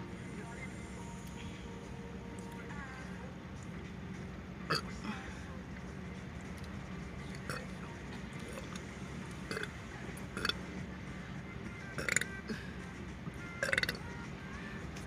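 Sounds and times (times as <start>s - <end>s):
person burping: 4.7s - 5.1s, 9.5s - 9.7s, 10.4s - 10.6s, 12.0s - 12.7s, 13.6s - 14.0s.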